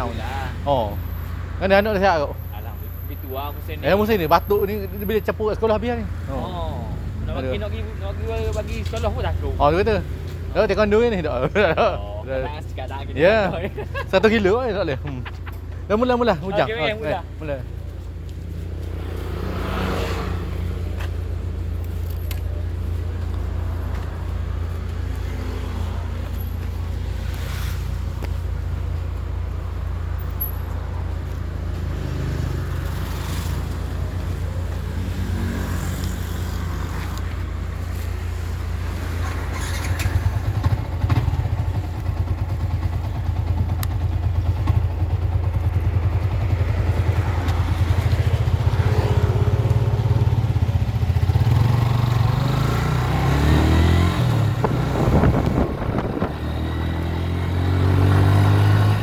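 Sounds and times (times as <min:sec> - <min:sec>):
motorcycle engine running: 0:39.6 - 0:59.0.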